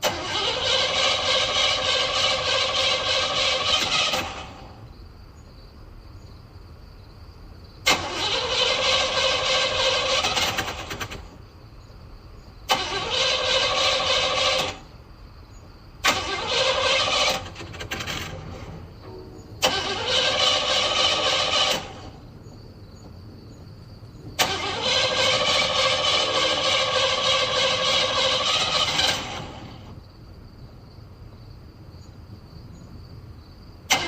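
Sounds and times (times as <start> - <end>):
starter motor cranking engine: 0.0 - 4.8, 7.8 - 11.4, 12.7 - 14.9, 16.0 - 22.2, 24.4 - 30.0
sharp starter click: 16.0 - 22.2, 24.4 - 29.6.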